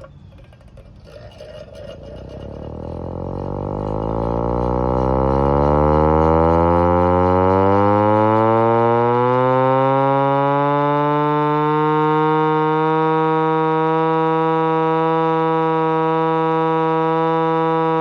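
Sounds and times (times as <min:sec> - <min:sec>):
hand-crank siren wailing: 0:00.0 - 0:18.0.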